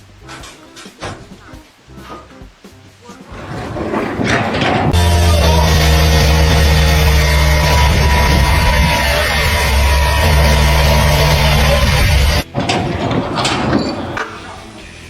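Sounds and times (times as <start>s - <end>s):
loud rock music: 4.5s - 12.7s, 14.1s - 15.0s.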